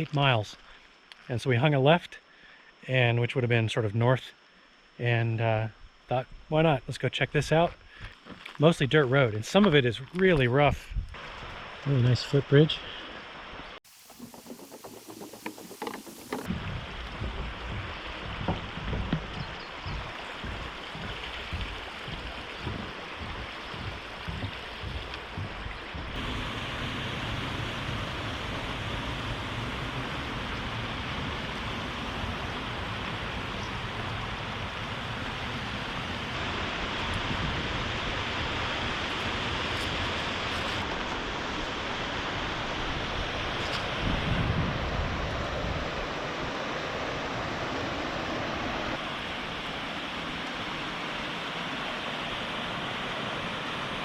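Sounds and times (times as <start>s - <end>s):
waterfall rushing water: 13.9s - 44.0s, 45.1s - 54.0s
low rumble: 16.4s - 37.6s.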